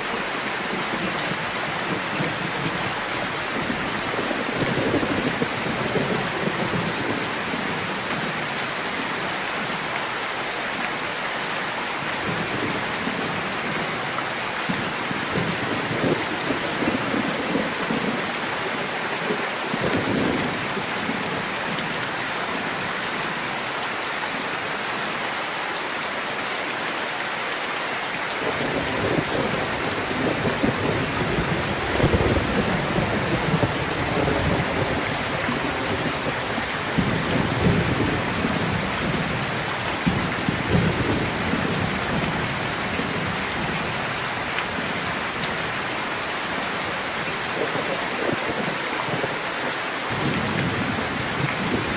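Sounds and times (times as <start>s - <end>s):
steady rain: 0.0s - 51.9s
rolling thunder: 28.5s - 43.9s.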